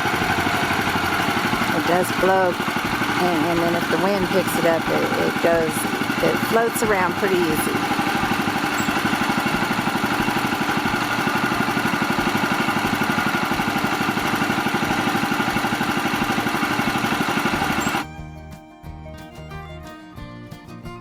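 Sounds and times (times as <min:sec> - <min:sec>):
sawmill engine sawing log: 0:00.0 - 0:18.0
country fiddle music: 0:00.0 - 0:21.0.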